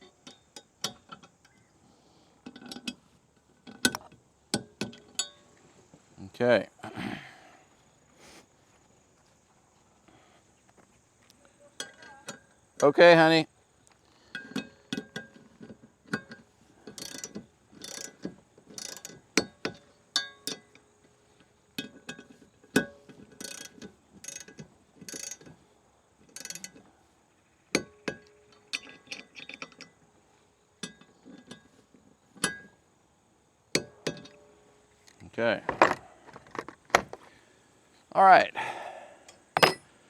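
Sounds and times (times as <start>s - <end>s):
ratchet wrench clicking: 16.9s - 20.7s, 23.4s - 25.5s, 26.3s - 26.8s.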